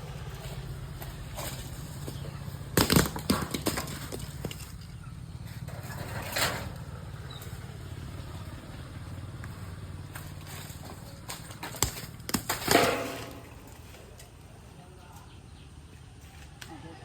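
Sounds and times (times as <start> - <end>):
coconuts thudding on ground: 1.0 - 4.9, 10.1 - 14.1.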